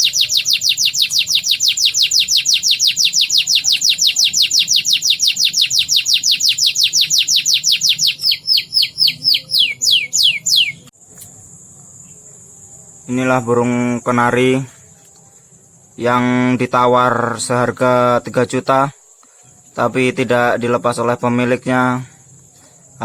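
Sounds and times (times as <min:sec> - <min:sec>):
canary singing trill: 0:00.0 - 0:16.2.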